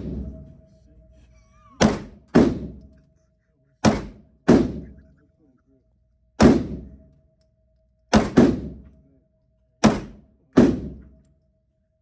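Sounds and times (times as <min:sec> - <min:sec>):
handgun shots: 0:01.8 - 0:02.9, 0:03.8 - 0:05.0, 0:06.4 - 0:07.0, 0:08.1 - 0:08.8, 0:09.8 - 0:11.1.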